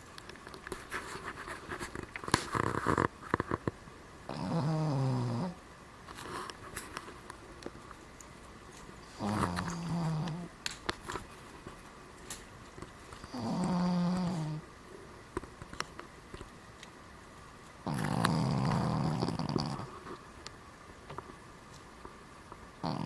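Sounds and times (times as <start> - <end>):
dog snoring: 2.4 - 3.7, 4.3 - 5.6, 9.0 - 10.5, 13.2 - 14.7, 17.8 - 20.2, 22.8 - 23.0.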